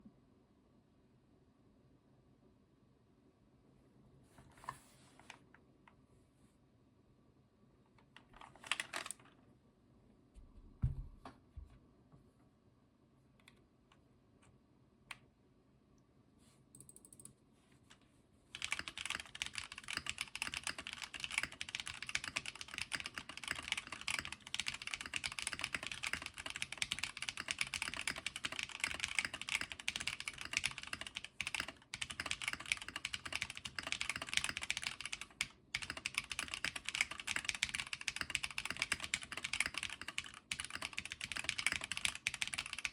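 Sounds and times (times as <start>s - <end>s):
keyboard clicks: 8.1s - 9.3s, 16.7s - 17.4s, 18.5s - 42.9s
fast typing on keyboard: 8.4s - 9.2s, 18.5s - 42.9s
low thump: 10.5s - 11.4s.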